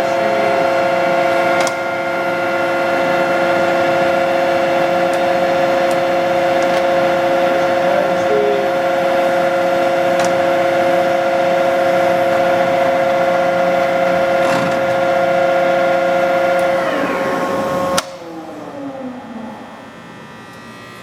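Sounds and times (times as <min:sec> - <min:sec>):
lathe gear whine: 0:00.0 - 0:21.0.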